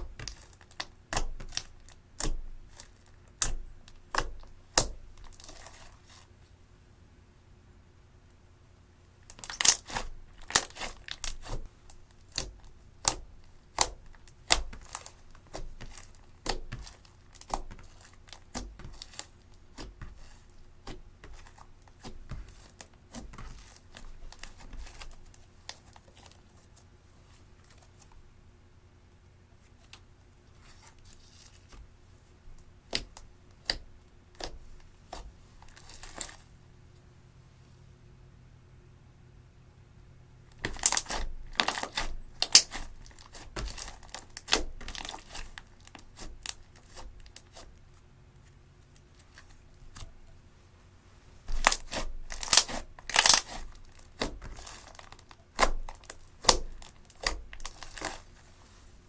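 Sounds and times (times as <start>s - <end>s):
slime popping and crackling: 0.0s - 5.9s, 9.3s - 25.2s, 40.5s - 47.6s, 51.5s - 58.3s.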